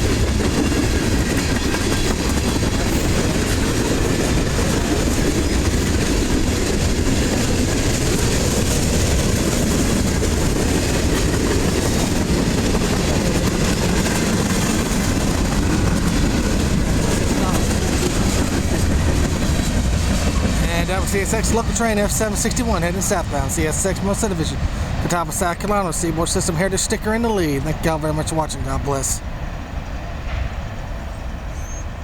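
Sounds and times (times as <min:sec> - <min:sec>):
freight train wheels on rails: 0:00.0 - 0:32.0.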